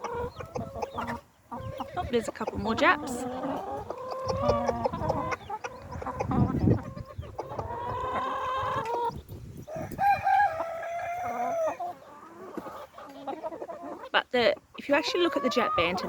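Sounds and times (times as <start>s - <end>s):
chickens clucking: 0.0s - 16.0s
rooster crowing: 9.7s - 11.8s.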